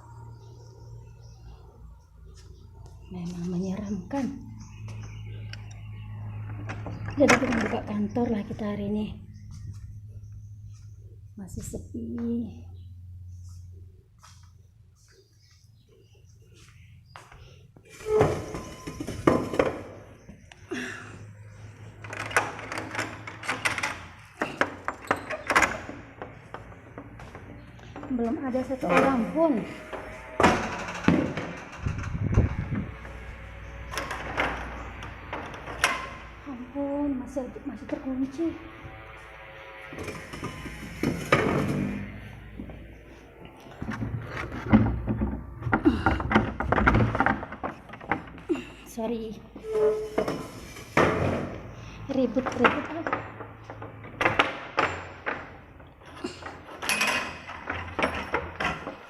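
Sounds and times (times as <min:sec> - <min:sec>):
door being unlocked and opened: 0:22.0 - 0:26.3, 0:56.4 - 0:59.0.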